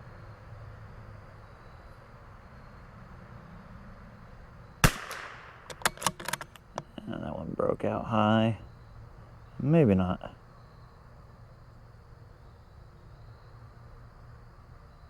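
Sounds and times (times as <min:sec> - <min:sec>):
rifle shot: 0:04.8 - 0:06.4
rifle bolt metallic clicks: 0:04.8 - 0:06.9.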